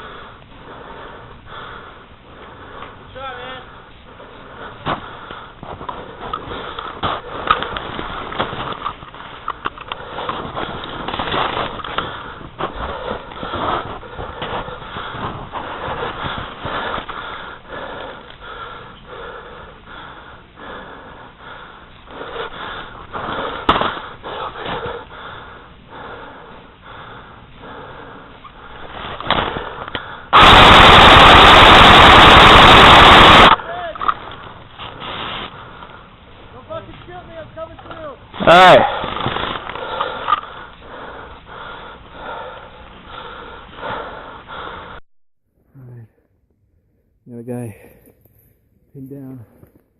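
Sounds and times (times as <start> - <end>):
person breathing: 0.0 - 8.4, 9.9 - 30.4, 34.1 - 36.5, 38.9 - 45.0, 47.7 - 48.3
loud hiss-like burst: 30.3 - 33.6.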